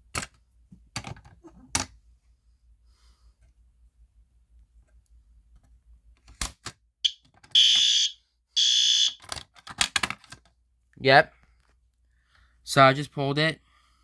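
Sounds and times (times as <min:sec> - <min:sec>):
fire alarm horn blasts: 0:07.0 - 0:09.2.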